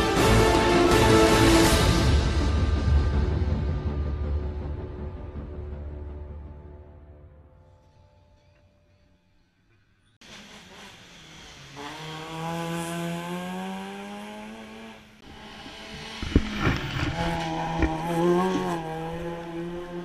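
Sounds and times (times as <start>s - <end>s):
race car engine accelerating: 10.2s - 20.0s.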